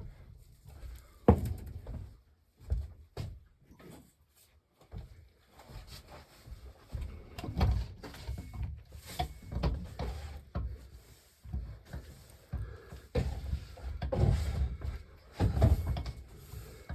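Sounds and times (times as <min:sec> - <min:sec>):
objects knocking and thudding: 0:01.3 - 0:02.1, 0:11.6 - 0:16.9.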